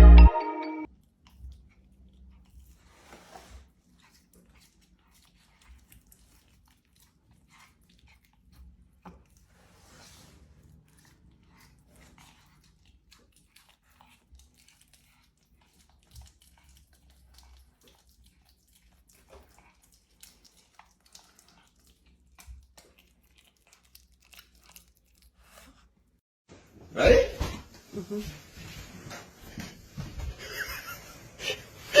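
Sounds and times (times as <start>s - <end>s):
pet chewing and crunching: 0.9s - 26.2s.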